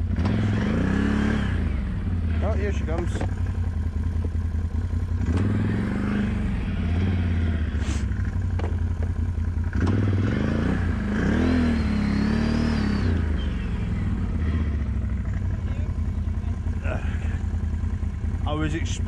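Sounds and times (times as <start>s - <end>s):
atv engine idling: 0.0s - 19.0s
quad engine revving: 0.0s - 19.0s.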